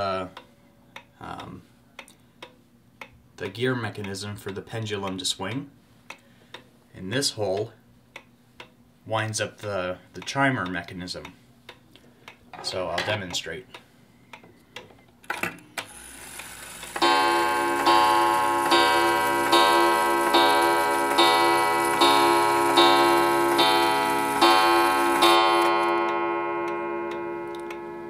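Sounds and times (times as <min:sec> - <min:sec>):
clock chime striking: 0:16.9 - 0:28.0.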